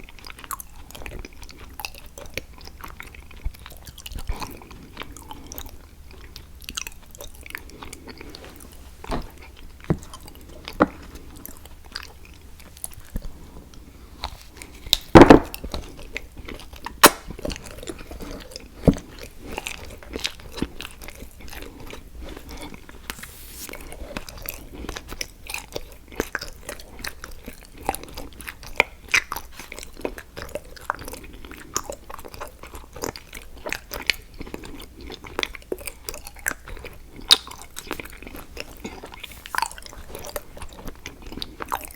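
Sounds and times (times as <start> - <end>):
chewing: 0.0 - 41.9
chocolate cracking and crunching: 16.8 - 17.5.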